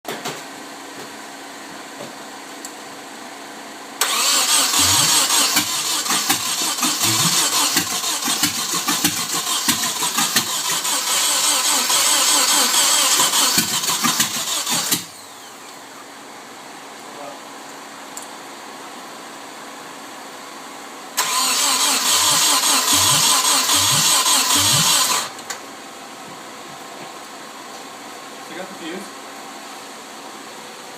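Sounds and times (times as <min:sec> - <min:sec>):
engine cranked by starter: 0:04.0 - 0:15.8, 0:21.2 - 0:25.5.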